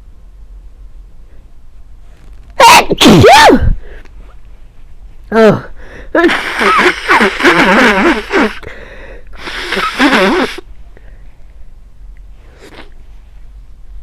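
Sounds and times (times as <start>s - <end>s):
person sneezing: 2.6s - 3.8s, 5.3s - 8.8s, 9.4s - 10.6s
person sniffing: 5.8s - 10.7s, 12.4s - 13.0s.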